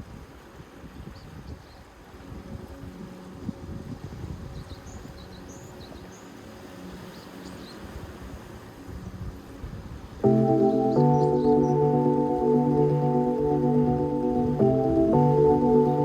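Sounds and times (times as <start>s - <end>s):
wind rumbling on microphone: 0.0s - 6.1s, 7.9s - 10.3s
loud synthesizer chord: 10.2s - 16.0s.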